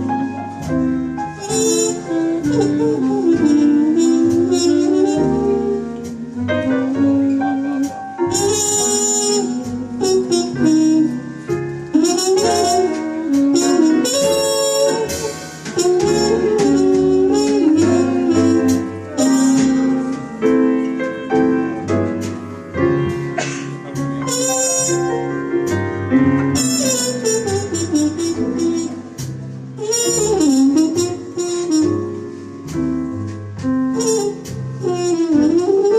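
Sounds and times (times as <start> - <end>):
drum kit: 0.0 - 35.9
horn melody: 0.0 - 35.9
piano: 0.0 - 35.9
upright bass: 0.0 - 35.9.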